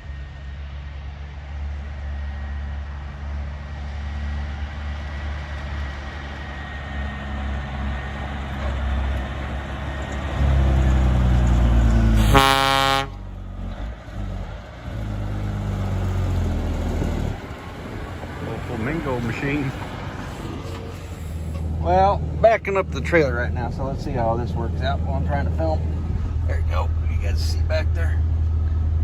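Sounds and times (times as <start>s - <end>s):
heavy truck engine running: 0.0s - 29.0s
truck horn honk: 12.2s - 13.3s.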